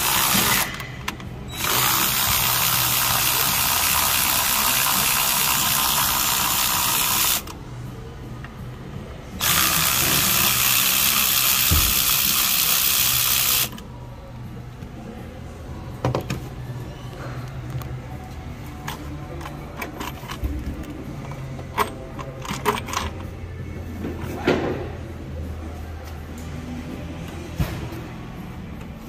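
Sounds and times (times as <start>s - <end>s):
power ratchet running: 0.0s - 7.6s, 9.4s - 13.8s.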